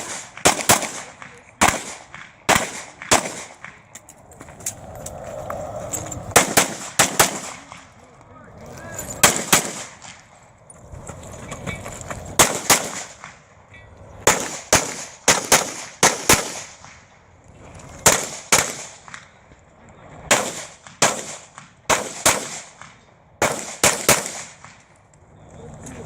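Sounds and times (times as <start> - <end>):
pistol shots: 0.0 - 3.9, 6.3 - 7.9, 9.2 - 10.3, 12.4 - 13.4, 14.2 - 17.0, 18.0 - 19.3, 20.3 - 24.8.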